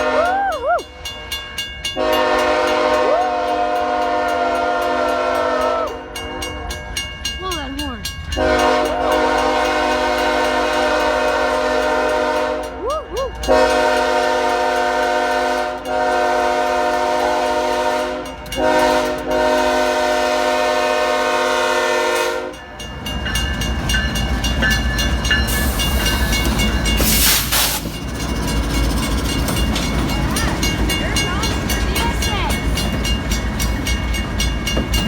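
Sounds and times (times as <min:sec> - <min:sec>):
locomotive air horn: 0:00.0 - 0:00.5, 0:02.0 - 0:06.8, 0:08.4 - 0:12.8, 0:13.5 - 0:22.6
train wheels clicking on rails: 0:00.0 - 0:35.0
locomotive engine rumble: 0:06.8 - 0:35.0.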